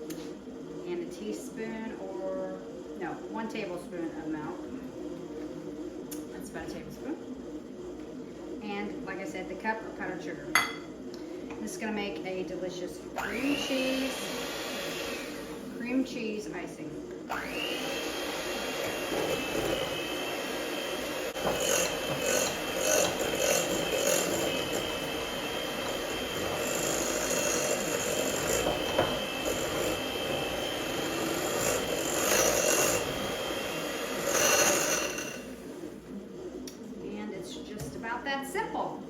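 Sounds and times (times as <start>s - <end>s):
electric mixer whining: 11.8s - 35.7s
beaters scraping bowl: 17.3s - 35.7s.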